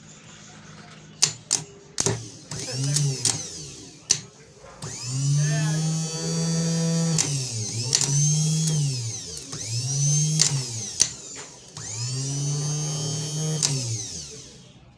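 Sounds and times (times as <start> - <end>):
starter motor whining: 0.6 - 14.9
sharp clicks: 1.2 - 3.5.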